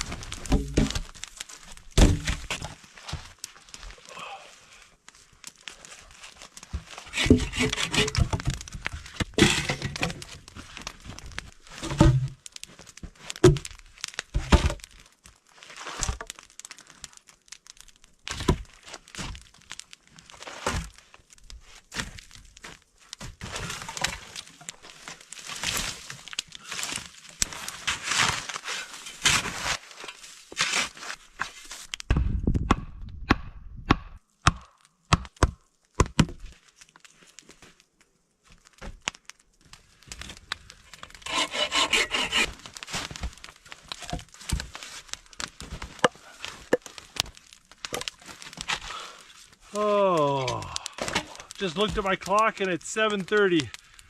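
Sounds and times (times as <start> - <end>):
crunching: 0.0 - 32.1, 38.5 - 54.0
sticks and branches snapping: 40.0 - 52.6.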